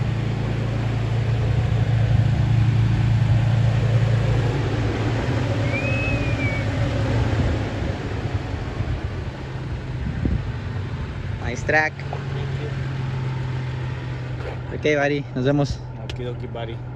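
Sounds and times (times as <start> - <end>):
car engine humming: 0.0 - 16.9
high whistle: 5.6 - 6.8.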